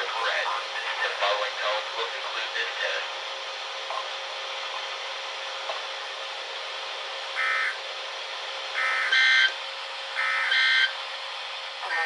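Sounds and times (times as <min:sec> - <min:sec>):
data tone bursts: 0:08.8 - 0:09.6.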